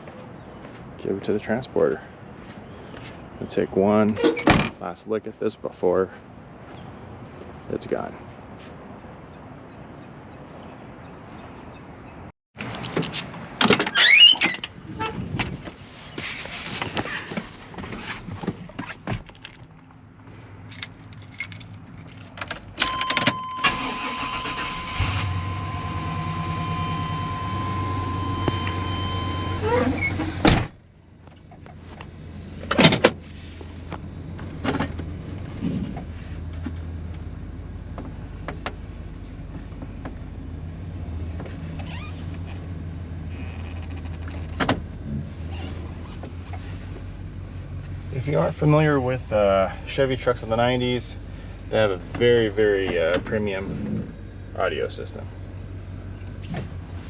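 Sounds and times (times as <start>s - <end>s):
door shutting: 4.2s - 4.8s, 29.6s - 30.7s
steady warning tone: 22.8s - 30.2s.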